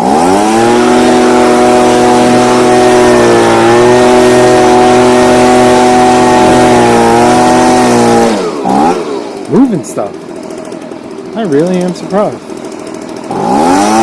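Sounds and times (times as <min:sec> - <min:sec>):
leaf blower whining: 0:00.0 - 0:14.0.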